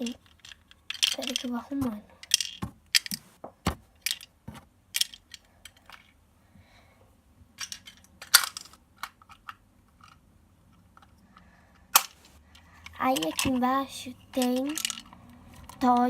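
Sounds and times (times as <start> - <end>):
plastic toy pieces clicking: 0.0 - 3.3, 4.0 - 4.3, 4.9 - 6.1, 7.6 - 10.2, 11.9 - 16.0.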